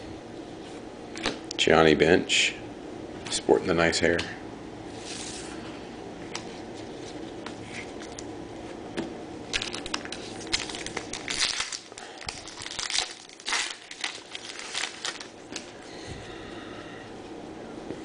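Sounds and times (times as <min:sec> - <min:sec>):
card wrappers crinkling: 0:09.5 - 0:15.8.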